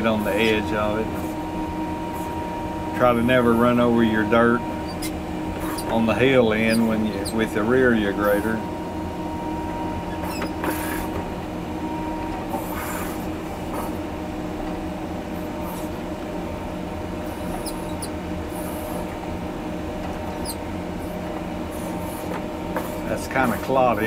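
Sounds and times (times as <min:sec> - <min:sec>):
high machine squeaks: 0:00.0 - 0:08.8, 0:09.5 - 0:14.0, 0:17.2 - 0:19.1, 0:20.1 - 0:24.0
diesel engine running under load: 0:00.0 - 0:24.0.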